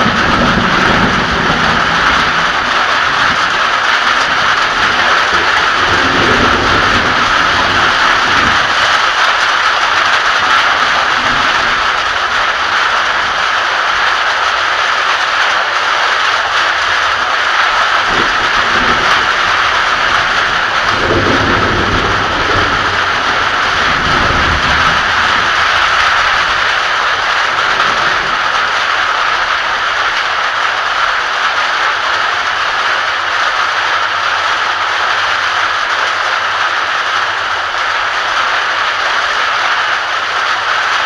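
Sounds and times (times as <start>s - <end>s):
thunder rumbling: 0.0s - 32.6s
heavy rain pouring: 0.0s - 41.0s.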